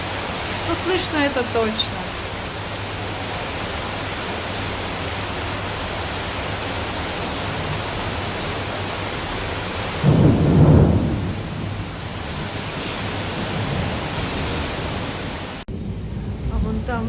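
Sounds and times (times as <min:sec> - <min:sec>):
heavy rain pouring: 0:00.0 - 0:17.0
thunder rumbling: 0:09.3 - 0:17.0.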